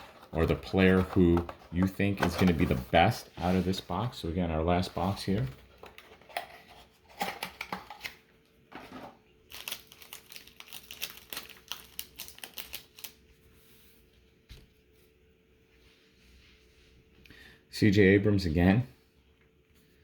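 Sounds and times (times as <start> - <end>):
packaging crackling and clicking: 9.5 - 13.2.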